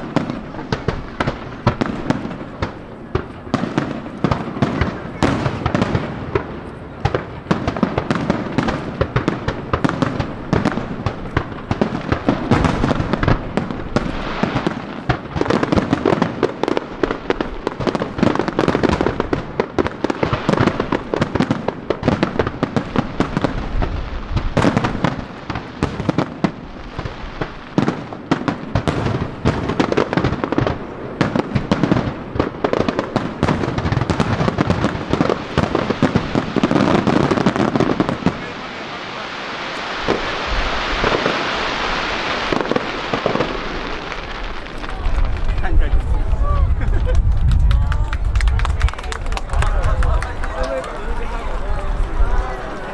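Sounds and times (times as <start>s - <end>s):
firework shells bursting: 0.0s - 38.4s
fireworks crackle: 0.0s - 52.9s.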